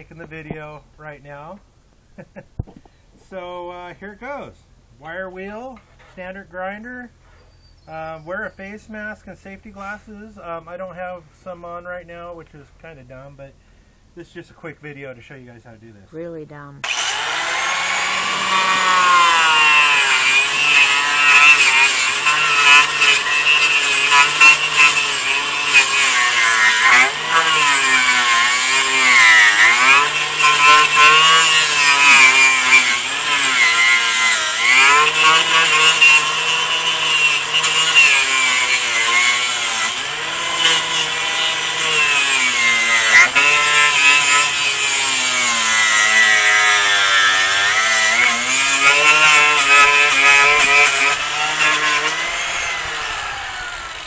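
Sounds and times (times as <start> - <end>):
angle grinder motor whine: 16.8 - 54.0
wire wheel scraping rasp: 17.7 - 53.8.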